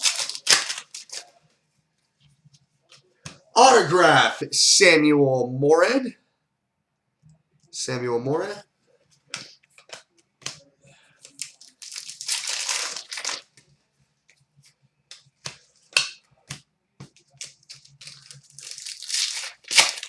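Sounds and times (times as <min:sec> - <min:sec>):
card packaging crinkling: 0:00.0 - 0:01.2, 0:11.3 - 0:13.5, 0:17.4 - 0:20.0
cards being handled: 0:00.0 - 0:01.3.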